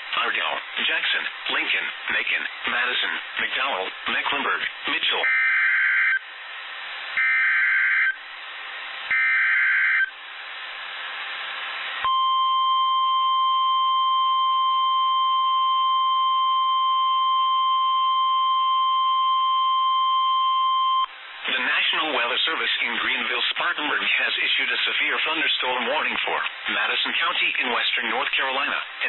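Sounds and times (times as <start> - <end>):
radio static hiss: 0.0 - 12.1, 21.1 - 29.0
steady warning alarm tone: 5.2 - 6.2, 7.2 - 8.2, 9.1 - 10.1.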